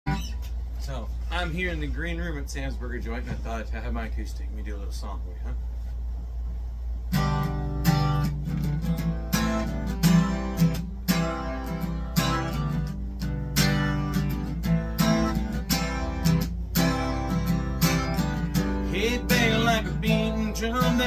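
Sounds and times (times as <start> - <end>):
acoustic guitar strumming: 7.1 - 21.0.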